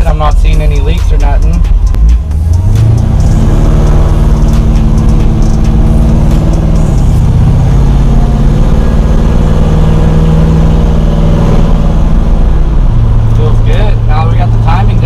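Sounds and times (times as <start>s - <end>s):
engine running through exhaust: 0.0s - 15.0s.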